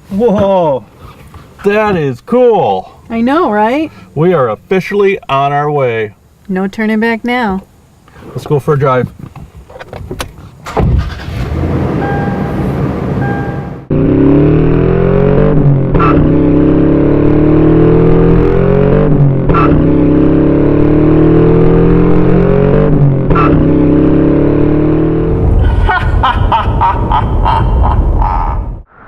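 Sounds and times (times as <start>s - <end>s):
car engine accelerating: 10.7s - 28.9s.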